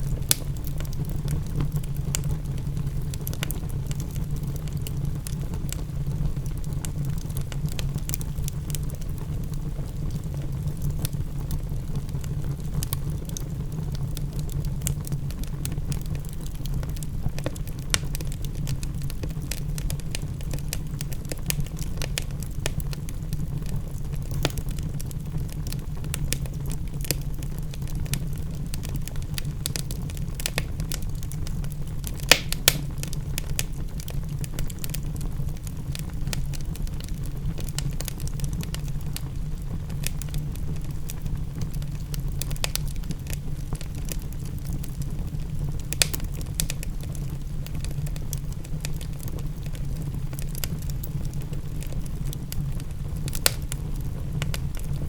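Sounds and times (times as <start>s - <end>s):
wood fire crackling: 0.0s - 55.0s
sharp pops of fire: 0.1s - 2.4s, 16.1s - 23.0s, 24.2s - 25.0s, 32.0s - 38.8s, 41.6s - 44.3s, 45.8s - 46.9s, 53.2s - 55.0s.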